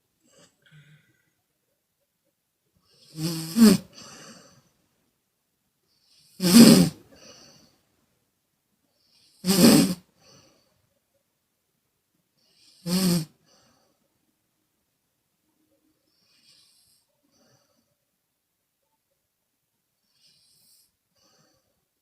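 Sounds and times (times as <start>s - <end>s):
faint breath: 0.2s - 1.5s, 3.8s - 4.9s, 7.0s - 8.0s, 10.0s - 11.0s, 12.4s - 14.2s, 16.0s - 18.1s, 20.0s - 22.0s
woman snoring: 2.9s - 4.6s, 6.0s - 7.7s, 9.2s - 10.5s, 12.5s - 13.8s.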